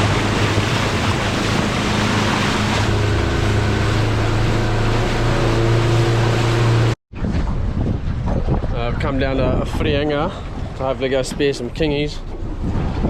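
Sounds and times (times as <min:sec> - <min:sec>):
motorboat engine hum: 0:00.0 - 0:08.8
rushing wind and water: 0:00.0 - 0:13.0.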